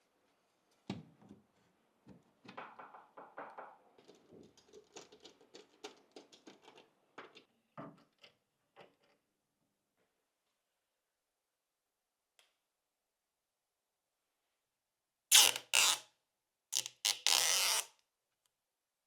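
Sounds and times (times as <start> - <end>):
rattly small knocks: 2.4 - 9.2.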